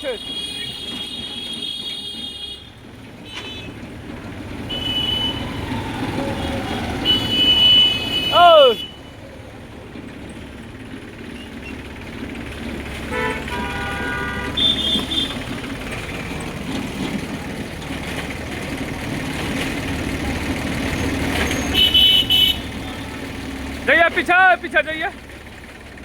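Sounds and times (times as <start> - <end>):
vehicle horn: 0.0 - 3.8, 4.6 - 5.6, 6.9 - 9.1, 13.0 - 15.7, 21.5 - 23.2
diesel engine running: 0.0 - 26.0.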